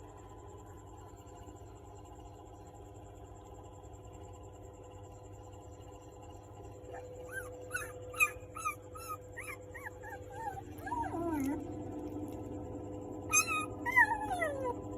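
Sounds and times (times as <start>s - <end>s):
steady hum: 0.0s - 14.9s
puppy whining: 6.9s - 12.6s, 13.2s - 14.9s.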